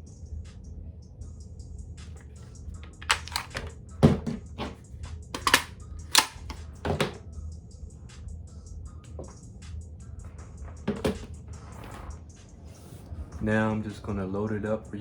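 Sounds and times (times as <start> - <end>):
steady low hum: 0.0 - 15.0
rifle magazines clacking: 2.8 - 4.8, 5.4 - 7.2.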